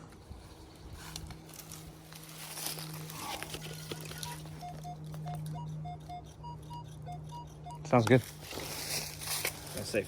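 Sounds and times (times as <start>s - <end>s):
coil rustling over ground: 0.0s - 4.8s, 8.0s - 10.0s
metal detector low hum: 0.0s - 10.0s
metal detector short high beep: 4.2s - 8.2s.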